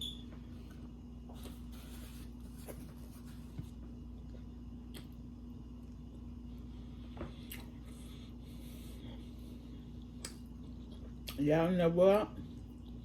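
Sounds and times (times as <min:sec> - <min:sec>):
low electrical hum: 0:00.0 - 0:13.0
person chewing food: 0:04.2 - 0:11.4.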